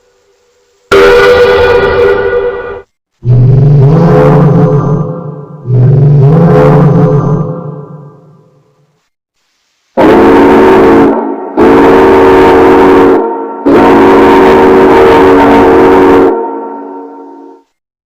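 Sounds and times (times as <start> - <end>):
tugboat horn blasts: 0.9 - 4.7, 10.0 - 17.7.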